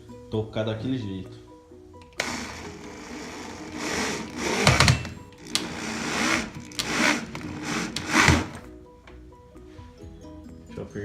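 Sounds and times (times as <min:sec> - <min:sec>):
electric drill whirring: 0:02.0 - 0:08.7.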